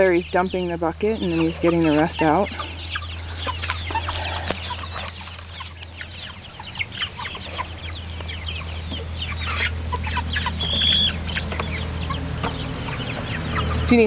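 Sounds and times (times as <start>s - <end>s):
chickens clucking and cheeping: 0.0s - 14.0s.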